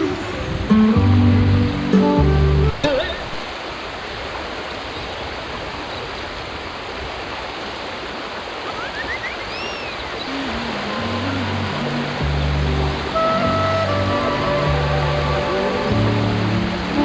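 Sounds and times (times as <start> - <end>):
mountain river rushing: 0.0 - 17.0
short rising whistle: 8.8 - 10.0.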